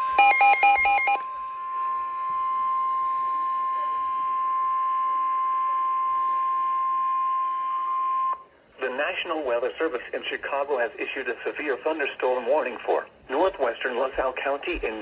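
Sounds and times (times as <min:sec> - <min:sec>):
steady warning alarm tone: 0:00.0 - 0:08.5.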